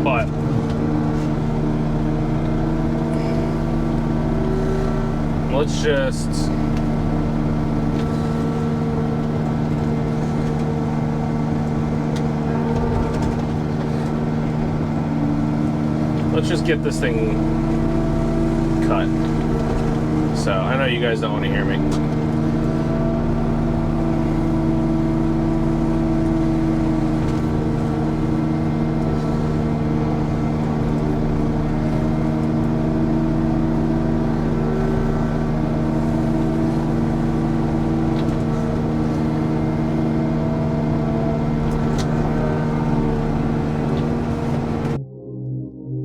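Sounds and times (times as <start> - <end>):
excavator engine and hydraulics: 0.0 - 45.0
background music: 45.0 - 46.0.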